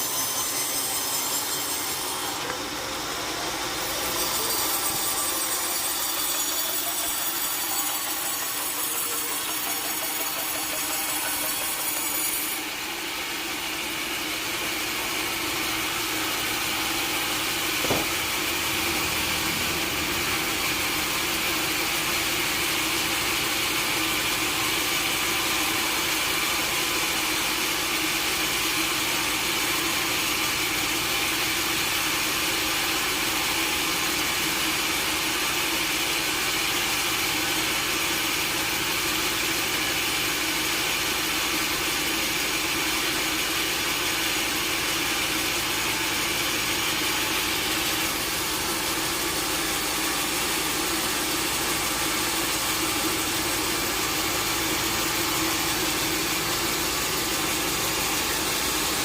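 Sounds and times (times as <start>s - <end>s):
sawmill machinery humming: 0.0s - 59.0s
sharp knock: 17.8s - 18.3s.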